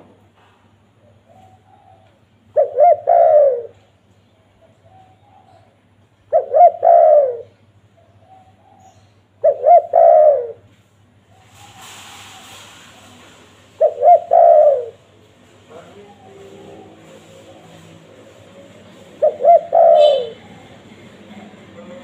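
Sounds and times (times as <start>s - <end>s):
dove cooing: 1.0s - 3.9s, 4.6s - 10.7s, 13.8s - 15.1s, 15.8s - 22.0s
hiss: 11.4s - 13.8s.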